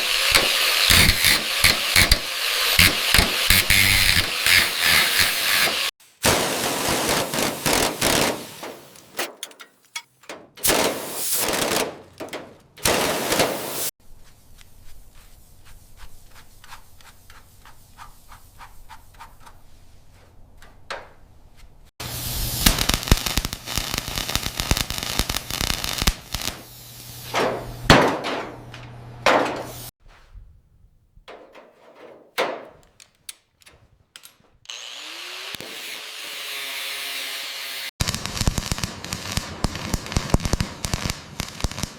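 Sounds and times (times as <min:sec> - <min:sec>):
loud rasping: 0:00.0 - 0:05.9
loud hissing bursts: 0:00.0 - 0:09.3, 0:22.0 - 0:27.3.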